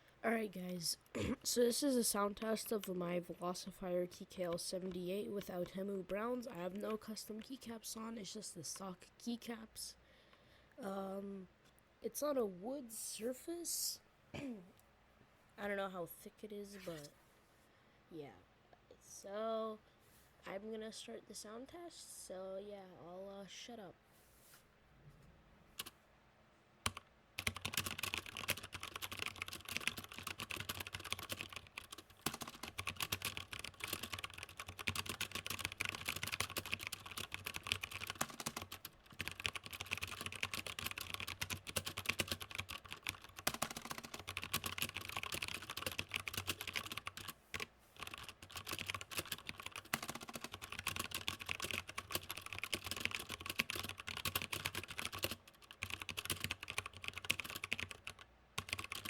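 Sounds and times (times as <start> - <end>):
mechanical keyboard typing: 26.8 - 59.0.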